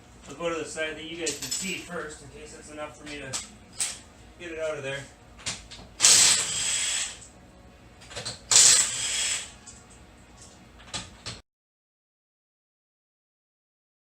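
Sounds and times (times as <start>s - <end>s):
power wrench running: 6.0s - 7.3s, 8.1s - 9.6s.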